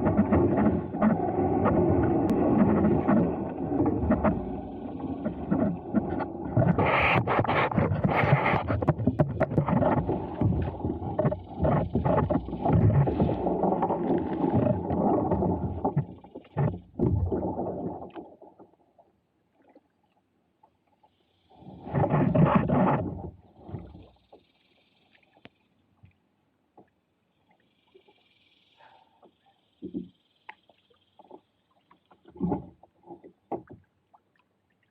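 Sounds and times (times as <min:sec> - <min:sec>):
kayak paddle knocks and scrapes: 0:00.0 - 0:17.5, 0:31.2 - 0:33.9.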